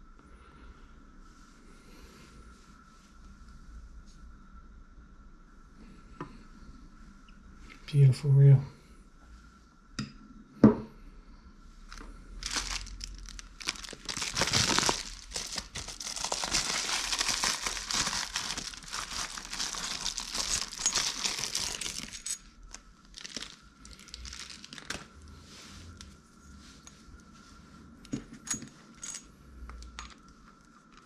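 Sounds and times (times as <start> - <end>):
packaging crinkling and tearing: 12.4 - 25.1.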